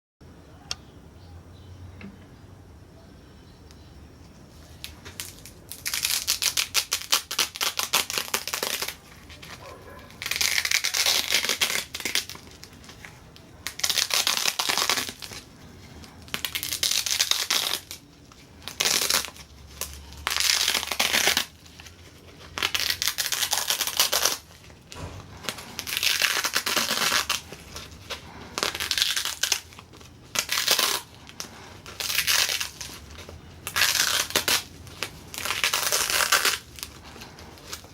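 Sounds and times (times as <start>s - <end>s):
crackling tearing noise: 4.5s - 37.9s.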